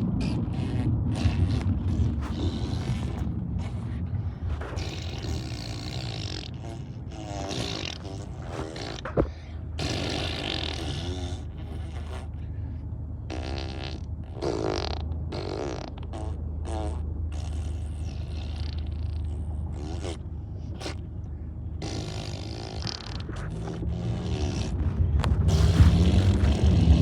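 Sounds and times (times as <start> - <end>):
wobbling fart sounds: 0.0 - 12.6, 13.2 - 27.0
steady low hum: 0.0 - 27.0.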